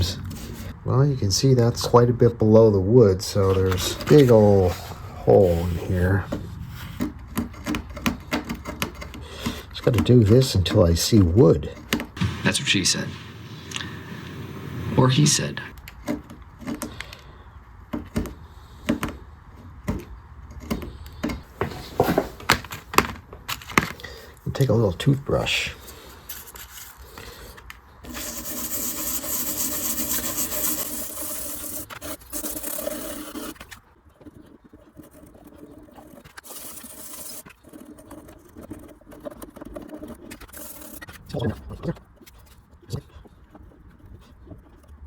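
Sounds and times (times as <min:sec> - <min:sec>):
hand tool scraping and tapping: 0:03.4 - 0:12.4
toothbrush scrubbing wood: 0:25.8 - 0:41.2.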